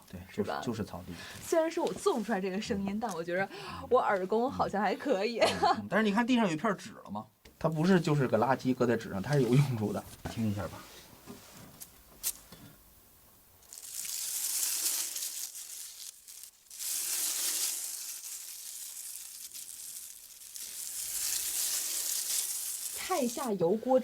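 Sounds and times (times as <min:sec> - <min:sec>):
paper crackling sizzle: 0:00.7 - 0:03.4, 0:07.7 - 0:12.6, 0:13.6 - 0:24.0.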